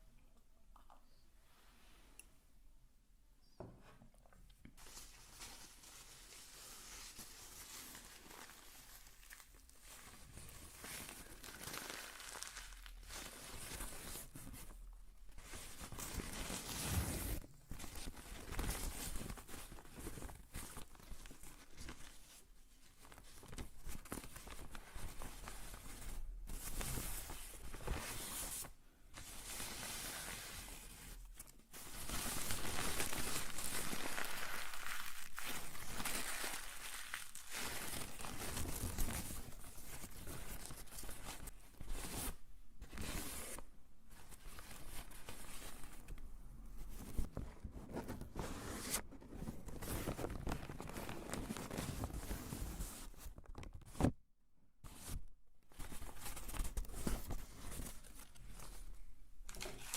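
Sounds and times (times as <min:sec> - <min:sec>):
crinkling and rustling material: 0:03.8 - 0:59.9.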